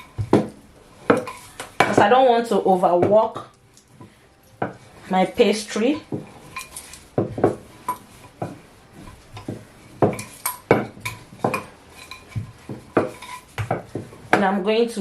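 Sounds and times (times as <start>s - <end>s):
rolling pin knocking on board: 0.2s - 2.2s, 7.2s - 7.7s, 9.4s - 11.6s, 12.4s - 14.5s.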